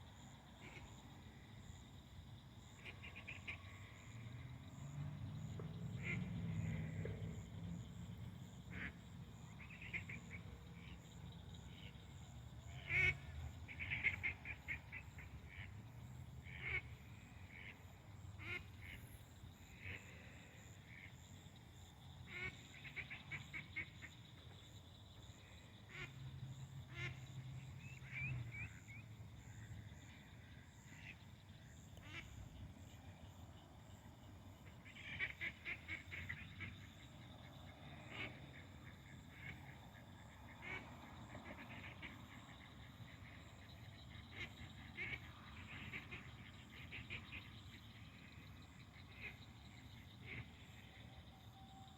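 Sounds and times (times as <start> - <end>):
duck quacking: 12.8 - 15.7.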